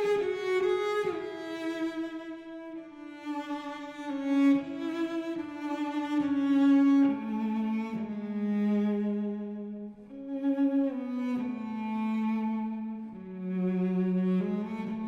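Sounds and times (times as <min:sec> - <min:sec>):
cello playing slow melody: 0:00.0 - 0:15.0.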